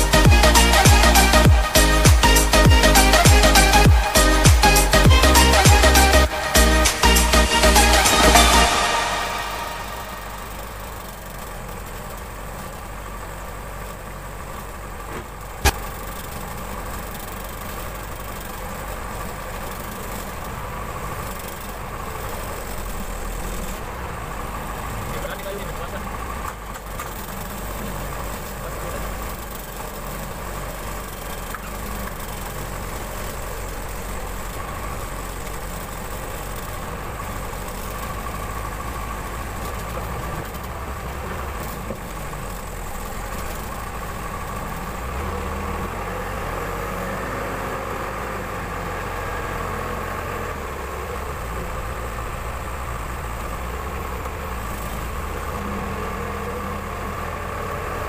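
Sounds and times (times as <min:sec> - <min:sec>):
steady machine whine: 0:00.0 - 0:12.6
diesel engine rumble: 0:00.0 - 0:58.0.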